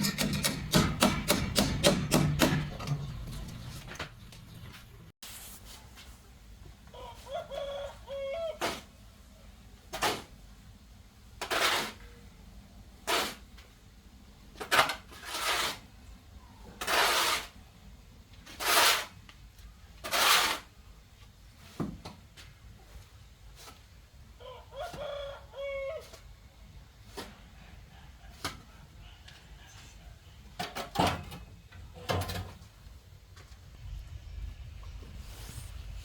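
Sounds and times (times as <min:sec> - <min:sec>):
rooster crowing: 0:06.9 - 0:08.6, 0:24.4 - 0:26.1
rough scraping strokes: 0:14.7 - 0:15.9, 0:33.8 - 0:36.0.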